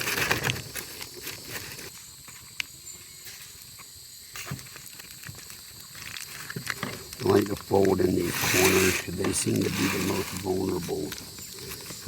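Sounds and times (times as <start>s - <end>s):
aluminium foil crinkling: 0.0s - 1.9s, 4.5s - 12.0s.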